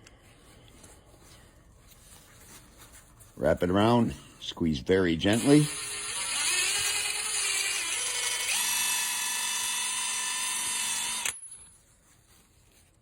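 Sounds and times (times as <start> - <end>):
impact gun motor whine: 5.3 - 11.4.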